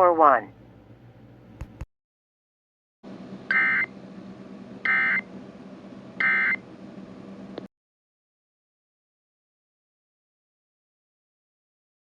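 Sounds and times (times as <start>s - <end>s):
faint hum and hiss: 0.0s - 1.8s.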